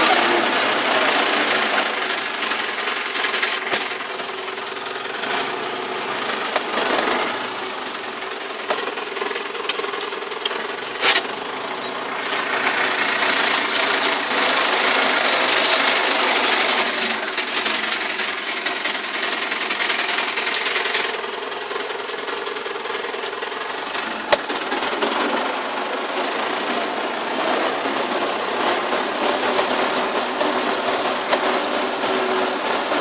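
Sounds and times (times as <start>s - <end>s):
rattles: 0.0s - 25.6s
tractor diesel engine under load: 0.0s - 33.0s
loud hiss: 12.4s - 18.2s, 19.8s - 20.6s.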